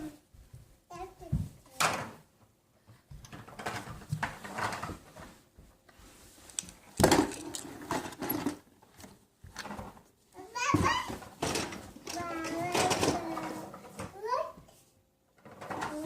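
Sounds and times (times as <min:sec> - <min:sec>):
hard pieces clicking and clattering: 0:06.5 - 0:08.6.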